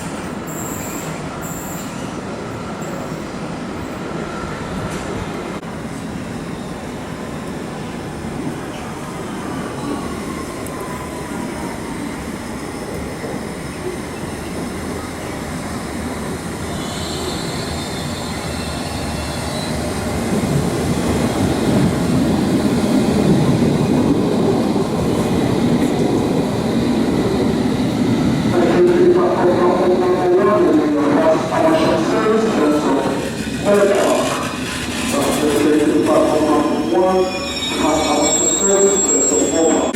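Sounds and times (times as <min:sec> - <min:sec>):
train rumbling on rails: 0:00.0 - 0:39.9
high wheel squeal: 0:16.7 - 0:19.8, 0:36.0 - 0:39.9.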